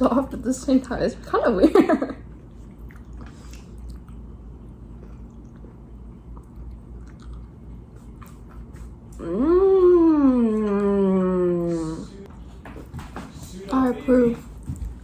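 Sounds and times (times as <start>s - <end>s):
low background hum: 0.0s - 15.0s
person chewing cookie: 2.4s - 11.7s.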